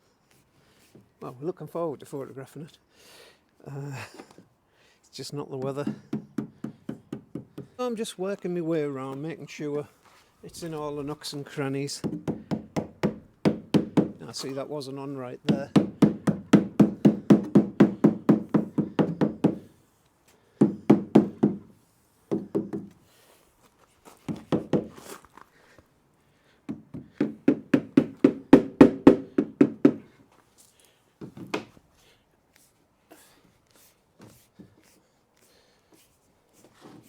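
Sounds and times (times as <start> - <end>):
dull knocks on door seal: 15.6 - 19.6.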